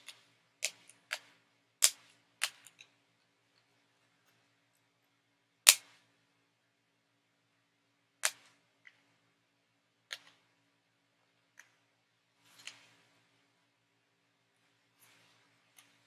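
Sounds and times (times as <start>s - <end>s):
sharp plastic clicks: 0.0s - 2.9s.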